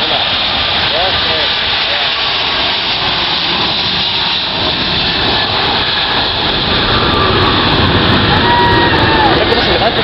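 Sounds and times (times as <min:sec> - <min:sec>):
jet engines at takeoff thrust: 0:00.0 - 0:10.0.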